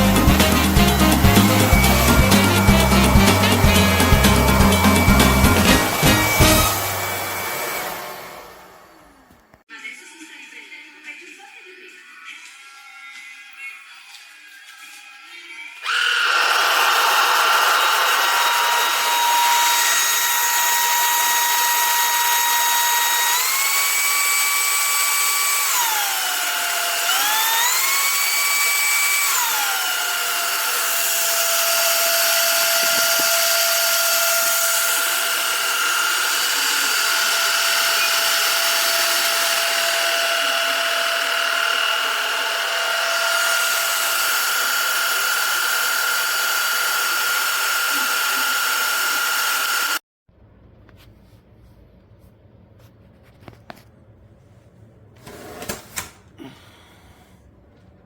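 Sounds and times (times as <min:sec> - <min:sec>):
vacuum cleaner motor whine: 0:00.0 - 0:09.6, 0:15.8 - 0:50.0.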